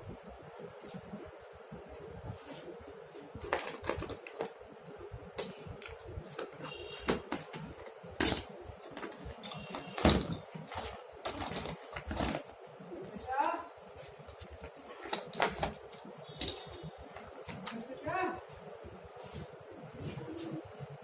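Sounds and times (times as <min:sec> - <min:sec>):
metal hand tools clinking: 0:08.2 - 0:12.4.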